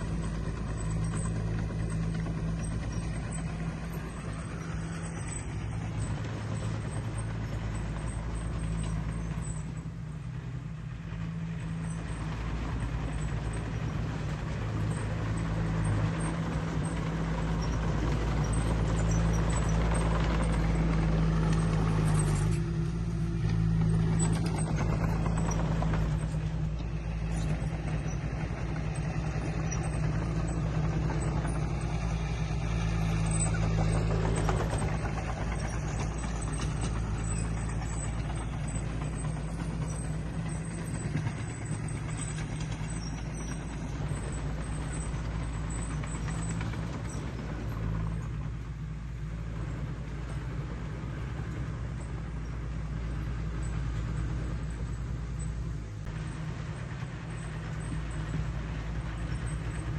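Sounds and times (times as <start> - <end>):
heavy machinery diesel engine: 0.0 - 59.9.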